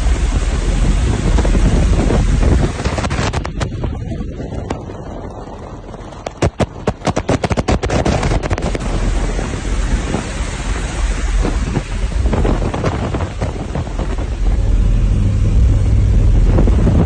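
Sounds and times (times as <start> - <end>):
air rushing inside aircraft cabin: 0.0 - 3.7, 6.9 - 17.0
heavy low rumble: 0.0 - 17.0
wind hitting microphone: 0.0 - 17.0.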